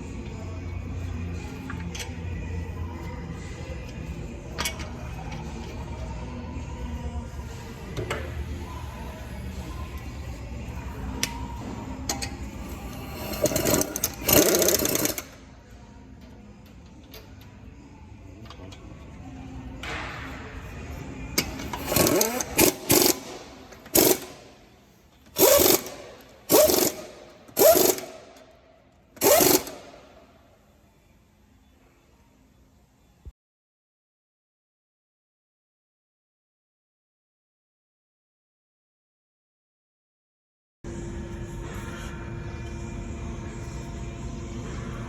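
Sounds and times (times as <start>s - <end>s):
power tool bursts: 25.4s - 28.2s, 29.2s - 29.8s.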